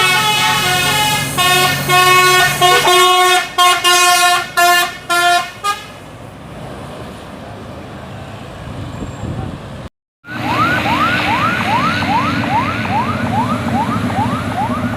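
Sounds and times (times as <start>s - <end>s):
musical bus horn blasts: 0.0s - 6.0s
road noise: 0.0s - 14.9s.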